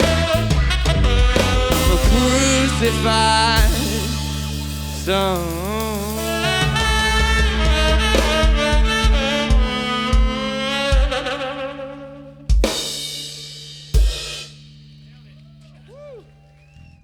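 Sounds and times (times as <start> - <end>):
drum hits: 0.0 - 2.6, 3.6 - 11.3
live rock band: 0.0 - 15.4.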